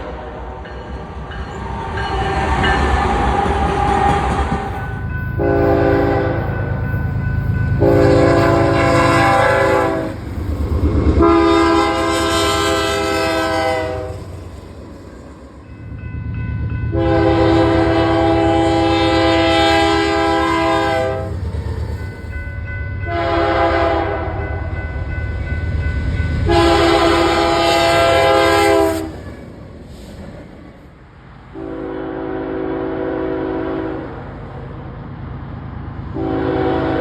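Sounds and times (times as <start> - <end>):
train rumbling: 0.0 - 37.0
locomotive air horn blasts: 5.4 - 6.6, 7.7 - 10.2, 11.2 - 14.3, 16.9 - 21.4, 23.1 - 24.5, 26.4 - 29.2, 31.6 - 34.1, 36.2 - 37.0.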